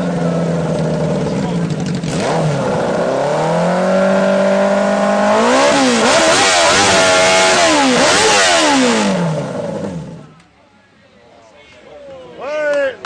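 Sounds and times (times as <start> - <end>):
motorcycle engine revving: 0.0 - 10.3.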